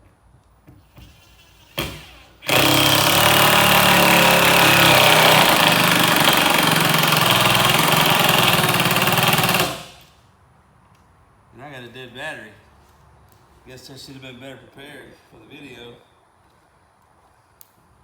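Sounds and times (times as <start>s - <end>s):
power driver whining: 0.8s - 10.2s
fast rattle: 1.1s - 10.2s.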